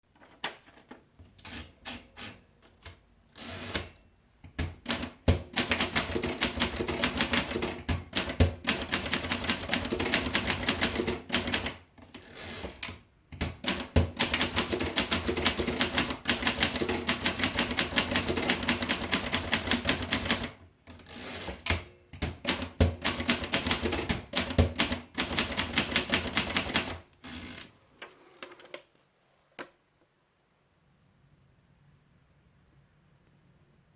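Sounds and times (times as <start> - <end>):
typewriter keys clacking: 4.9 - 11.8, 12.6 - 20.6, 21.4 - 27.0.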